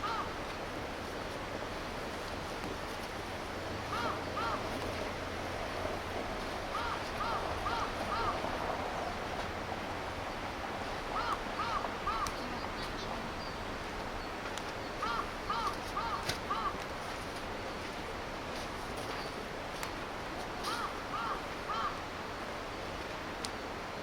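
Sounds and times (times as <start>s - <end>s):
crow cawing: 0.0s - 0.3s, 3.9s - 4.7s, 6.7s - 8.4s, 11.1s - 12.4s, 15.0s - 16.8s, 20.7s - 22.0s
river water rushing: 0.0s - 24.0s.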